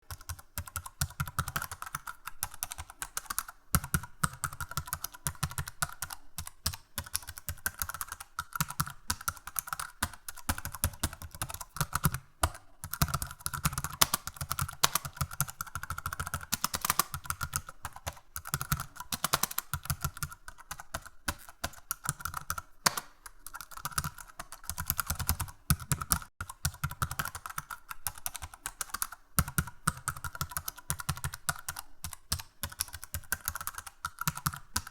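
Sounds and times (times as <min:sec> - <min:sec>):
typing on computer keyboard: 0:00.0 - 0:34.9.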